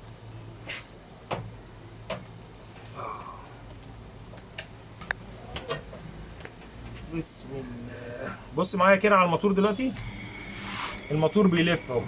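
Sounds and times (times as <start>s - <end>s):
washing machine motor humming: 9.5s - 12.0s.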